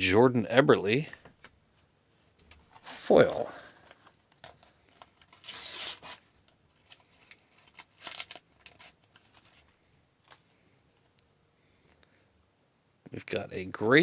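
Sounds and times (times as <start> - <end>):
stickers and cards rustling: 2.7 - 11.1
wrapper tearing open: 4.0 - 9.7.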